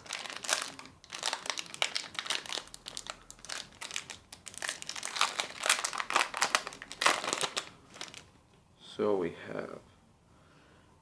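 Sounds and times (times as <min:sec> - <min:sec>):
foil wrapper crinkling: 0:00.0 - 0:08.3.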